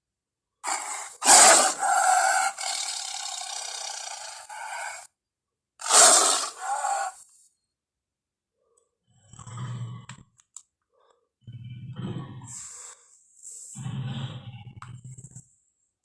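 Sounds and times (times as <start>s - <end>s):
dinosaur roar: 0.6s - 5.1s, 5.8s - 7.2s, 9.2s - 10.3s, 11.4s - 12.9s, 13.7s - 15.4s.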